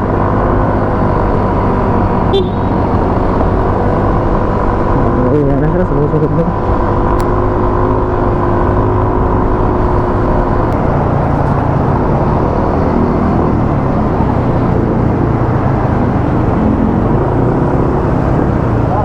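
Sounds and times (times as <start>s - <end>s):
motor scooter engine: 0.1s - 5.3s, 10.3s - 19.0s.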